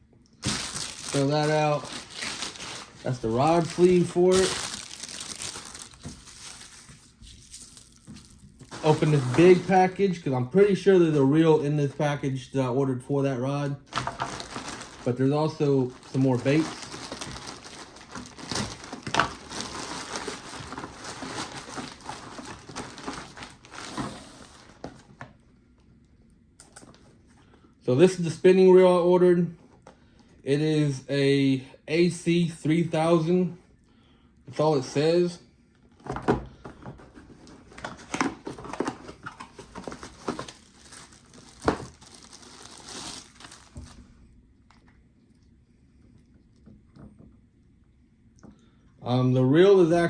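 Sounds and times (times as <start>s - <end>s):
packaging crinkling and rustling: 0.4s - 10.2s, 13.8s - 25.3s, 36.1s - 44.1s.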